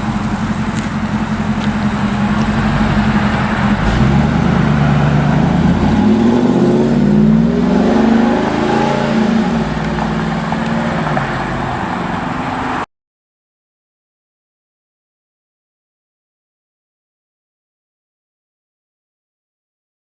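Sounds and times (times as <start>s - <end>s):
supercharged engine revving: 0.0s - 12.8s.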